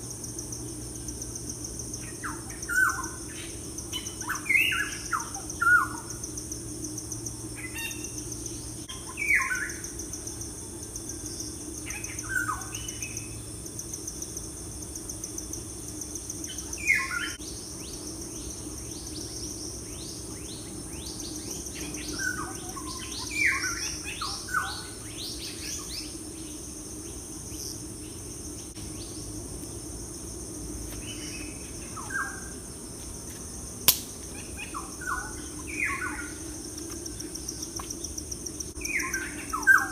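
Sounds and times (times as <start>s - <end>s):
high-pitched insect drone: 0.0s - 39.9s
wild birds singing: 0.6s - 14.4s, 15.0s - 29.8s, 30.9s - 32.8s, 34.1s - 39.9s
sharp click: 33.8s - 34.2s.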